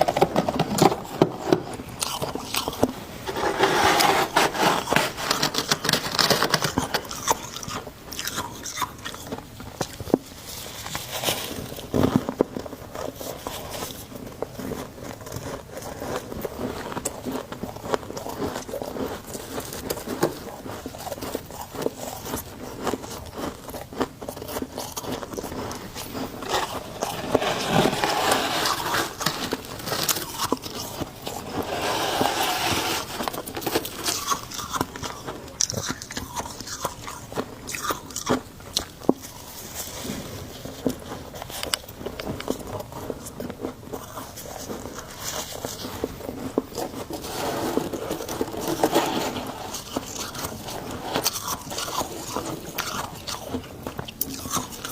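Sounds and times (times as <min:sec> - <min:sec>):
chewing crunchy frost: 0:00.0 - 0:54.9.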